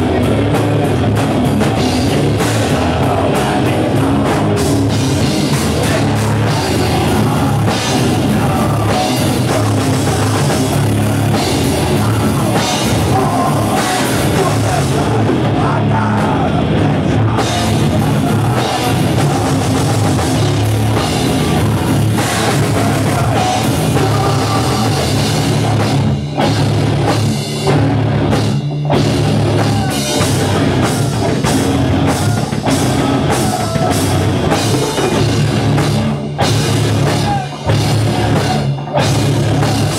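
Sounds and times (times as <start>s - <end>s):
drum kit: 0.0s - 39.9s
live heavy metal band: 0.0s - 39.9s.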